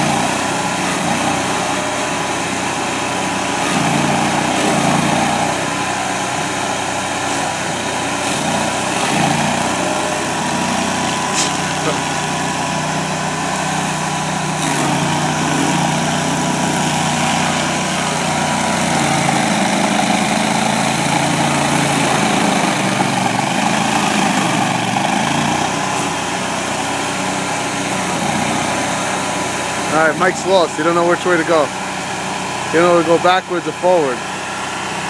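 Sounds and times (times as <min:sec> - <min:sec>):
stump grinder engine running: 0:00.0 - 0:35.0.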